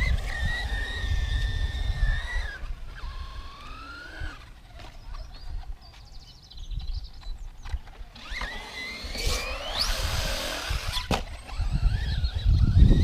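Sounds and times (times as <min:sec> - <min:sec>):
electric motor whine: 0:00.0 - 0:13.0.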